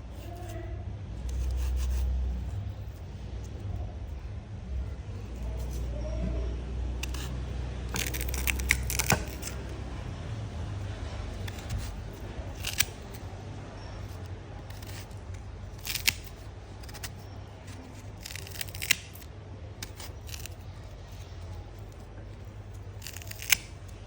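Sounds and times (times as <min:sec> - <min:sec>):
low steady hum: 0:00.0 - 0:24.0
small crackles: 0:06.9 - 0:10.0, 0:11.0 - 0:24.0
knife crunching into fruit: 0:07.0 - 0:09.8, 0:14.1 - 0:21.2, 0:22.7 - 0:23.9.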